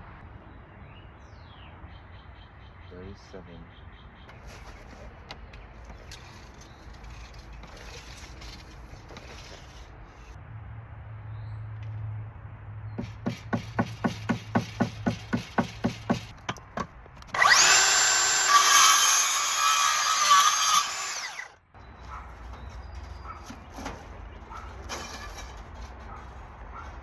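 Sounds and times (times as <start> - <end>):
sharp knocks: 13.0 - 17.2
power tool running: 17.2 - 21.6.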